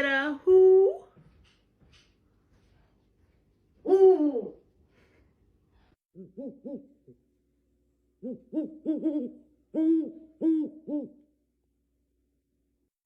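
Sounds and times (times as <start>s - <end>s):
owl hooting: 3.8s - 4.6s, 6.2s - 7.2s, 8.2s - 11.3s.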